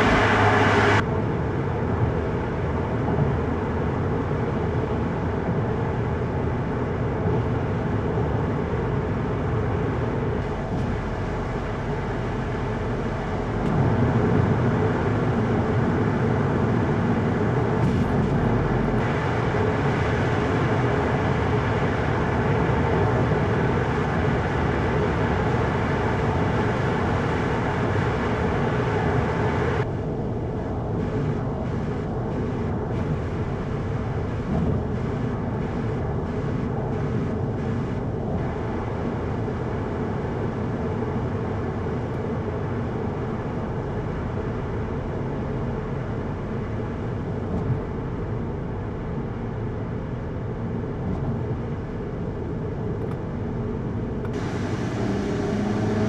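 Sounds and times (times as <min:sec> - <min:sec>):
car engine: 0:00.0 - 0:01.0, 0:09.0 - 0:40.4, 0:53.0 - 0:56.0
road and tyre rumble: 0:00.0 - 0:56.0.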